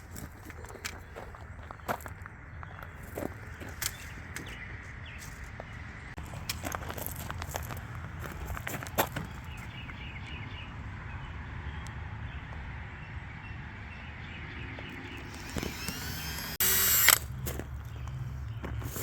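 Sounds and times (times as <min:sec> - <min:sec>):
power drill running: 0:15.0 - 0:17.3.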